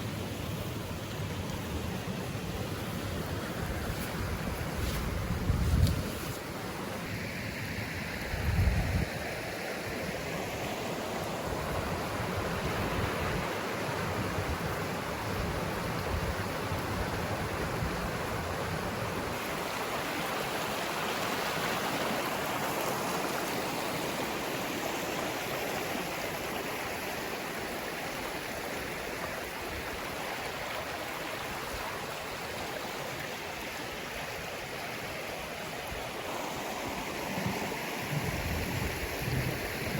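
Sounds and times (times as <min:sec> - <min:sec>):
stream rushing over cascades: 0:00.0 - 0:39.9
wind thump on microphone: 0:04.0 - 0:06.4.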